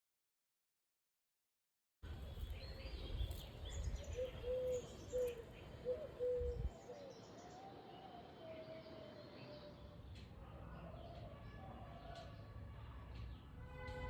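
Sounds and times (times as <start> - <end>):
birds calling: 2.2 - 12.4.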